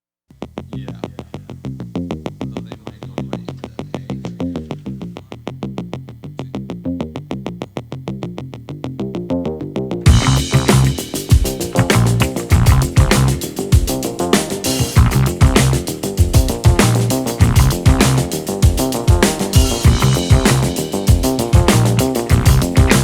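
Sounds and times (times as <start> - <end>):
drums: 0.3 - 5.6, 10.0 - 23.0
bass line: 0.3 - 23.0
synthesizer pattern: 10.1 - 23.0.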